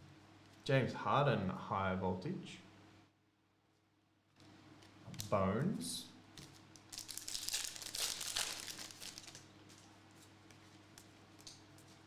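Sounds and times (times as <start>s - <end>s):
plastic wrapper crinkling: 6.4s - 10.0s.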